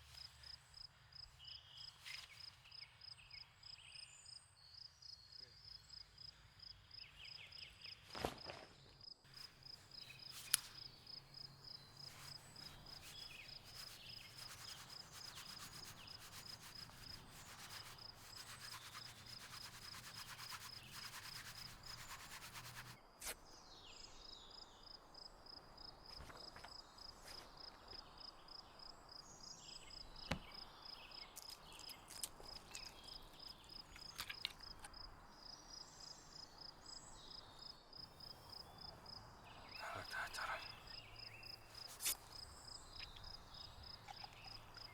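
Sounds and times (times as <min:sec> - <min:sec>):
insect chirping: 0:09.3 - 0:23.0, 0:27.0 - 0:44.9
rustling: 0:09.3 - 0:23.0.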